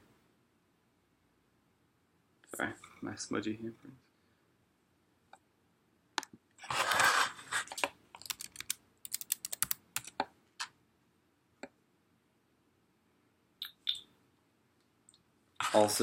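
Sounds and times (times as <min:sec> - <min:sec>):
packaging rustling scrape: 0:06.6 - 0:07.8.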